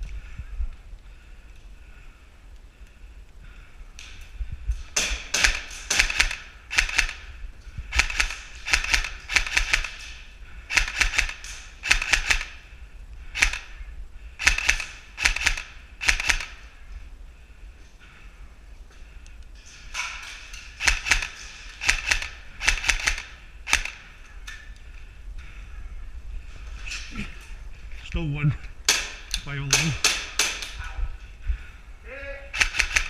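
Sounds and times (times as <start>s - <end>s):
airsoft gun shots: 5.0s - 7.2s.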